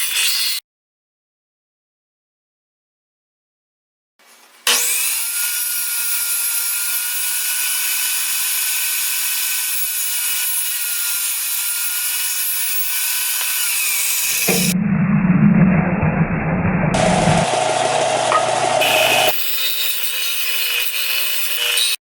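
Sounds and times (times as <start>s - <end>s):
power tool cutting wood: 4.6s - 14.8s, 17.0s - 22.0s.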